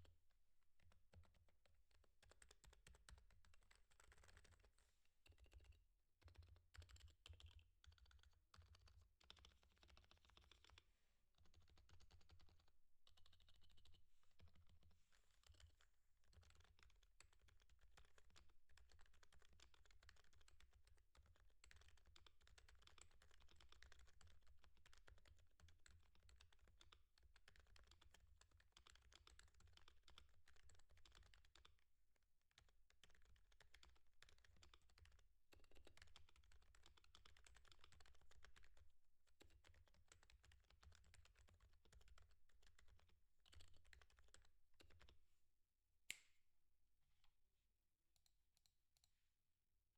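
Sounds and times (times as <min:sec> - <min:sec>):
keyboard typing: 0:06.3 - 0:10.8.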